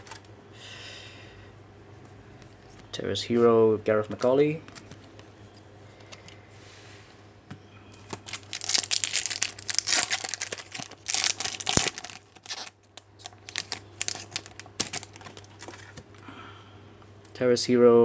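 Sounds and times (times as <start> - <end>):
card packaging crinkling: 8.0 - 16.2.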